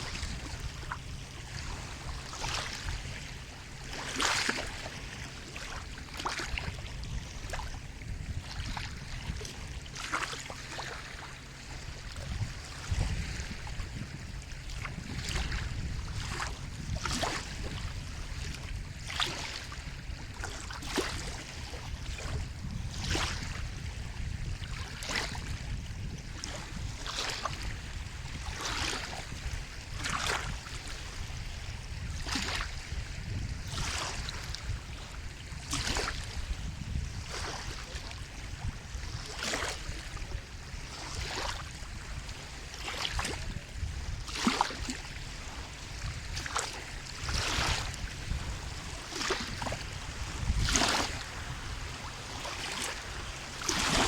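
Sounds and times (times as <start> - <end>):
sea water lapping and splashing: 0.0 - 54.0.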